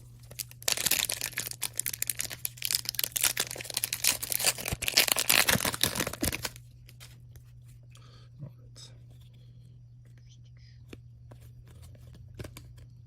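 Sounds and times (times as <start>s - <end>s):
foil wrapper tearing and crinkling: 0.3s - 6.6s.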